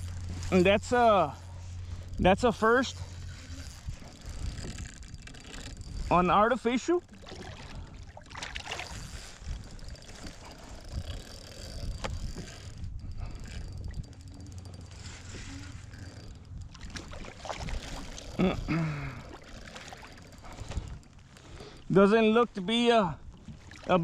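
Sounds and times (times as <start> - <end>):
low rumble: 0.0 - 17.8
water splashing: 6.1 - 10.8, 16.7 - 21.0.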